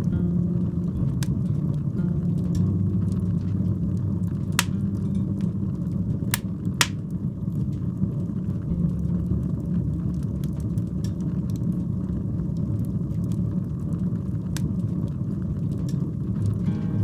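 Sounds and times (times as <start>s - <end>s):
fire crackles and pops: 0.0s - 17.0s
wood fire burning: 0.0s - 17.0s.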